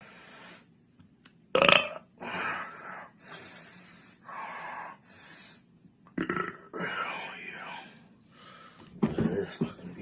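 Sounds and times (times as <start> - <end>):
man belching: 1.6 - 2.1, 6.2 - 6.8.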